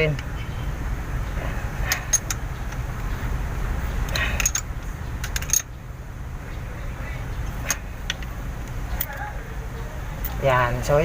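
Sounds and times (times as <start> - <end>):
steady low rumble: 0.0 - 11.0
hand tools clinking on metal: 4.1 - 5.7.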